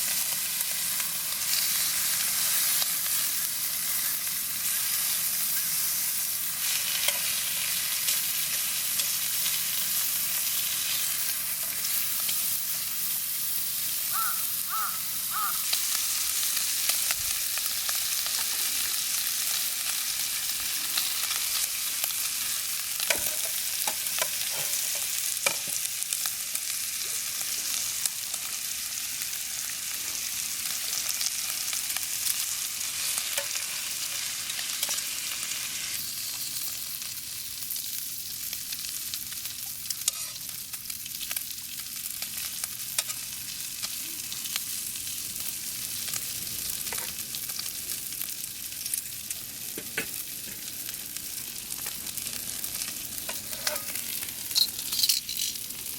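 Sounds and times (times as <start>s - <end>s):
meat sizzling in a frying pan: 0.0s - 55.9s.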